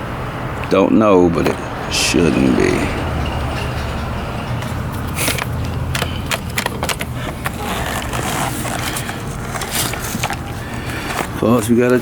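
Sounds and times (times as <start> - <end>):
plastic parts clicking and rattling: 4.6 - 12.0.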